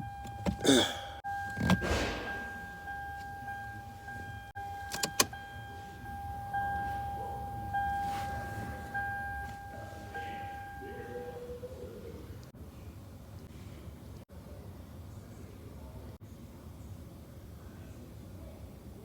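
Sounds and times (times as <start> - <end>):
electronic warning chime: 0.0 - 11.4.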